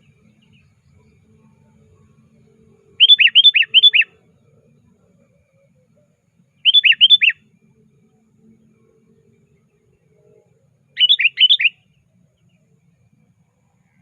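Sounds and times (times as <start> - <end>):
bulbul whistled song: 3.0 - 4.1, 6.6 - 7.4, 11.0 - 11.9.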